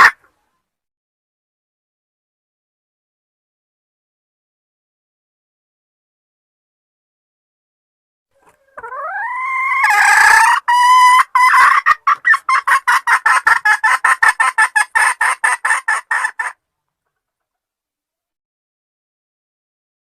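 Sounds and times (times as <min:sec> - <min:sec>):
hen clucking: 0:08.4 - 0:17.6.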